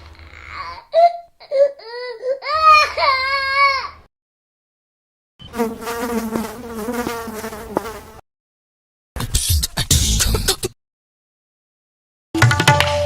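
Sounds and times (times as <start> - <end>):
wailing cry: 0.3 - 4.0
insect buzzing: 5.5 - 8.2.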